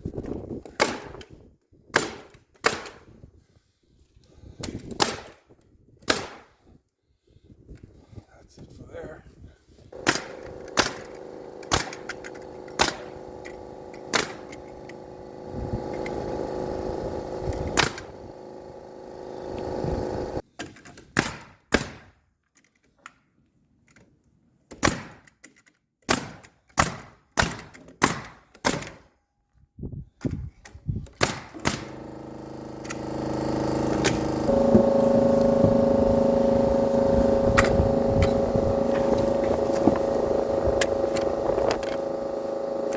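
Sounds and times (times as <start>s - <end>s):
steady hum: 10.0s - 20.4s, 31.6s - 42.9s.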